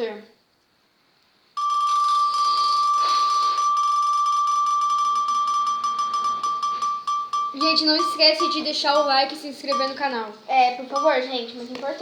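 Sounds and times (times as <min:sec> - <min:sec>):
roulette ball ticking: 0:01.6 - 0:10.2, 0:10.8 - 0:12.0
roulette wheel ringing tone: 0:01.6 - 0:10.2, 0:10.8 - 0:12.0.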